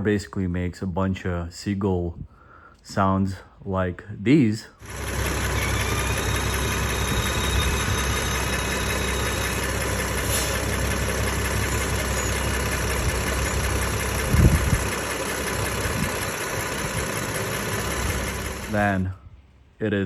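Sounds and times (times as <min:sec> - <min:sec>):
car engine idling: 0:04.8 - 0:19.1
faint high squeaking: 0:05.2 - 0:14.6.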